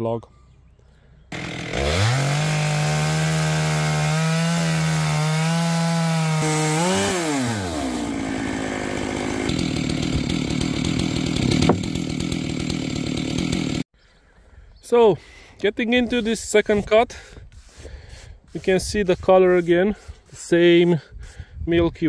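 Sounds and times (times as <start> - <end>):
chainsaw mill ripping log: 1.3 - 13.8
sharp wood crack: 1.3 - 13.8.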